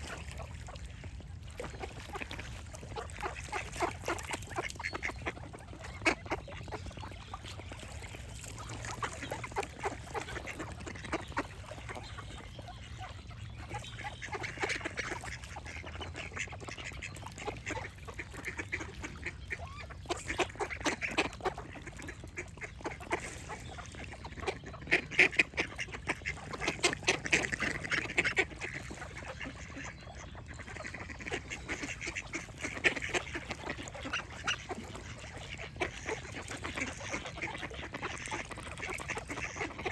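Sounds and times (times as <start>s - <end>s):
ducks quacking: 0.0s - 39.9s
birds singing faintly: 0.2s - 39.9s.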